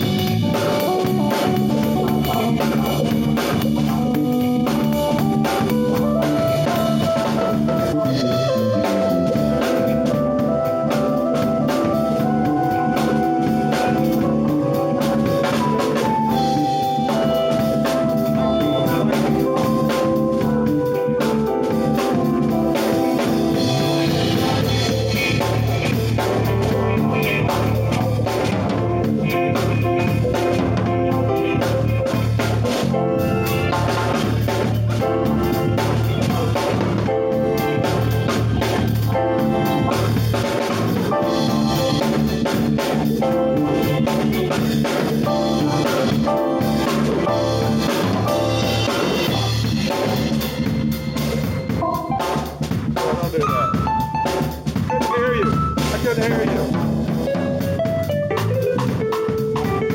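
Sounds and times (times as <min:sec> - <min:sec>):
drum kit beat: 0:00.0 - 0:59.9
jazz-funk keyboards: 0:00.0 - 0:59.9.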